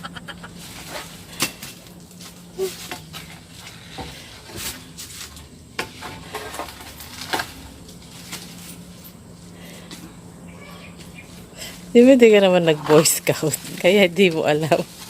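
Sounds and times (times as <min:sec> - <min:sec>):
rustling and handling: 0:00.4 - 0:10.2.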